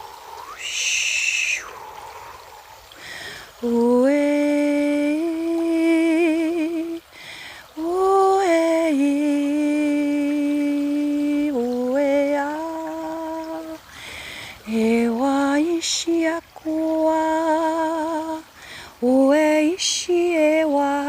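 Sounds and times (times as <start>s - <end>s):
faint river stream: 0.0s - 21.0s
singer breathing in: 1.7s - 3.6s, 7.2s - 7.7s, 13.9s - 14.6s.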